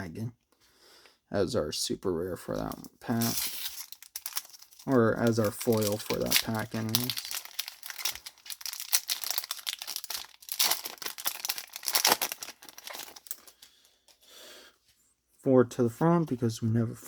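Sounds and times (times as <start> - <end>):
foil wrapper crinkling and tearing: 2.5 - 13.8.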